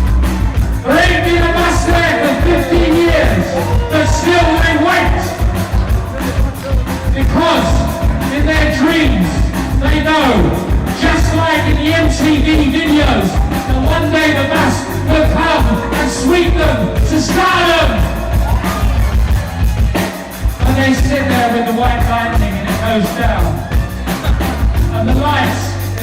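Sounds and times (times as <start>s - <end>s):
live punk rock band: 0.0s - 26.0s
person singing lead vocal: 1.0s - 8.4s, 13.8s - 18.9s.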